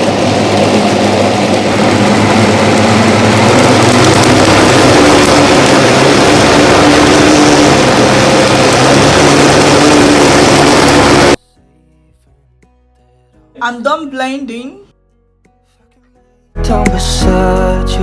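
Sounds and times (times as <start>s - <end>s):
blender motor whirring: 0.0s - 11.4s.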